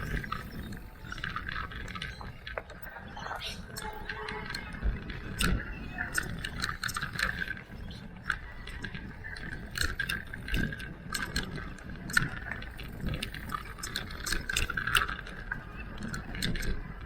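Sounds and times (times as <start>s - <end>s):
bike chain and frame rattling: 3.6s - 17.0s.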